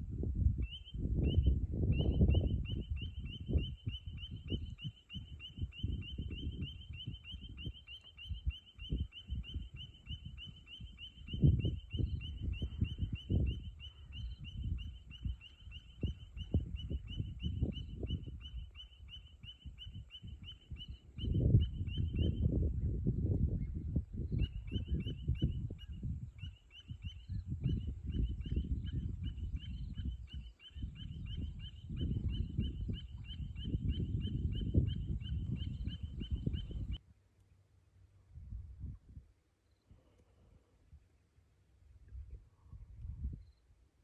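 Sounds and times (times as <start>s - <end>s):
high rapid chirping call: 1.3s - 22.4s.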